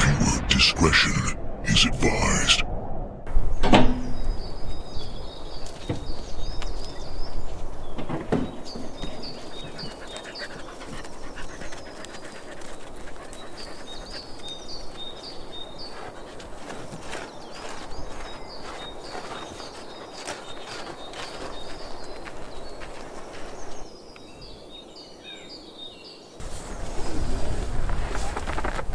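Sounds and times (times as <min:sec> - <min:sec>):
dog panting: 0:09.2 - 0:22.0.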